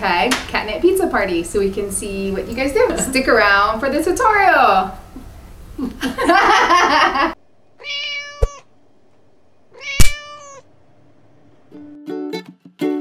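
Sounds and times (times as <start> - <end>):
cat meowing: 7.8 - 8.7, 9.7 - 10.7
sharp click: 10.0 - 10.3.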